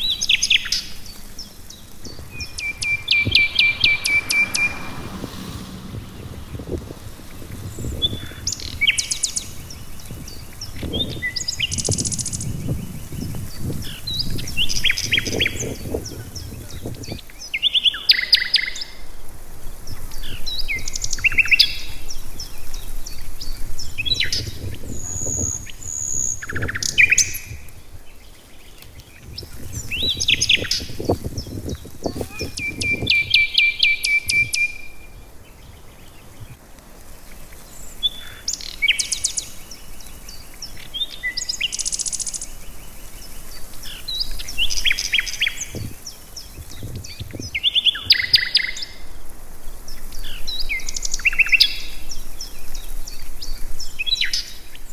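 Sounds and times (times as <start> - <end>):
low rumble: 0.0 - 11.8
birds singing and calling: 0.0 - 18.3, 22.4 - 36.6.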